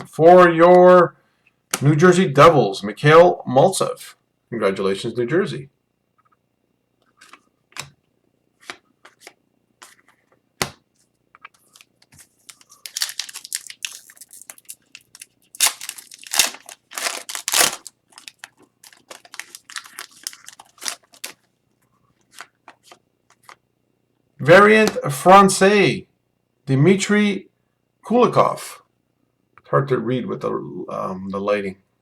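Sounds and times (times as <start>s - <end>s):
wrapper crinkling and tearing: 11.7s - 21.4s
card pack clicks and snaps: 12.5s - 21.4s.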